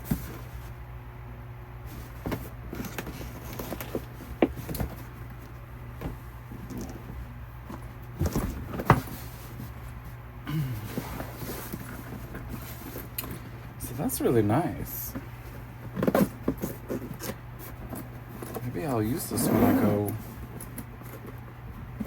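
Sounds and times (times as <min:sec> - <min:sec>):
steady low hum: 0:00.0 - 0:22.0.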